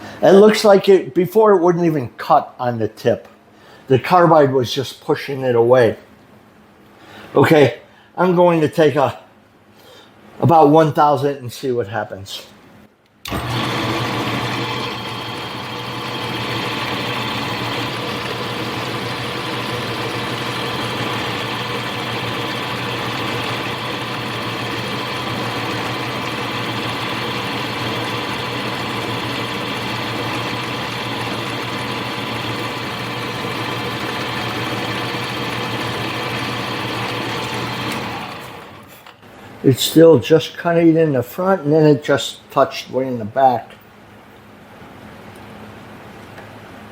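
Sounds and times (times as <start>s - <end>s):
lathe humming and whining: 13.3s - 39.0s.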